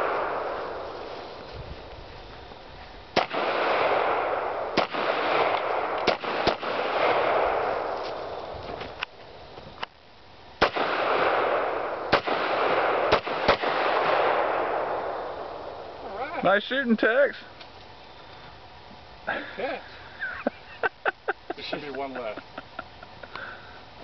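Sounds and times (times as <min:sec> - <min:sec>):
gunshots: 0:03.2 - 0:08.0, 0:10.6 - 0:15.5.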